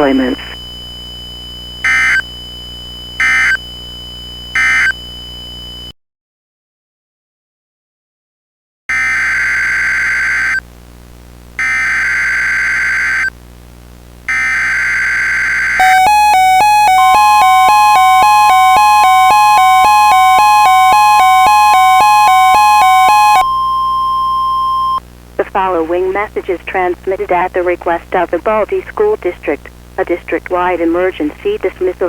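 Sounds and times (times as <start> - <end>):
buzzy data tone bursts: 11.6 - 13.3, 14.3 - 32.0
steady high tone: 15.8 - 25.0
two-pitch attention signal: 15.8 - 25.0.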